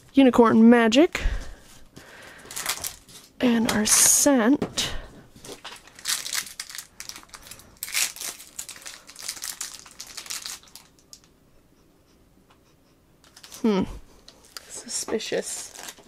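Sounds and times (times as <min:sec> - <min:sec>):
plastic packaging crinkling: 0:02.3 - 0:04.1, 0:05.4 - 0:11.3, 0:13.2 - 0:13.7, 0:14.4 - 0:16.0.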